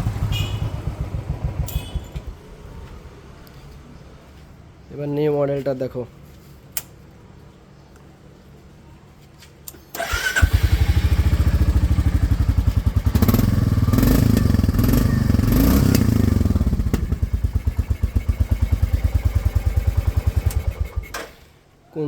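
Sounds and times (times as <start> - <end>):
motorcycle engine starting and idling: 0.0 - 3.3, 9.7 - 21.5.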